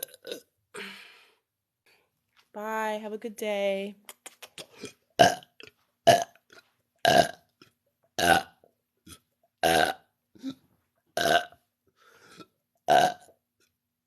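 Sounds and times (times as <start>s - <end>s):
woman burping: 0.0s - 0.9s, 7.0s - 7.4s, 9.6s - 11.5s, 12.9s - 13.3s.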